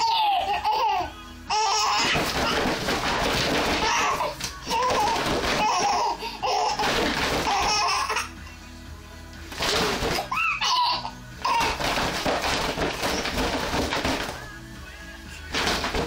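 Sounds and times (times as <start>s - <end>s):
baby laughing and squealing: 0.0s - 2.8s, 3.7s - 8.4s, 10.1s - 12.0s
plastic mat rattling: 1.5s - 8.3s, 9.5s - 14.6s, 15.5s - 16.0s.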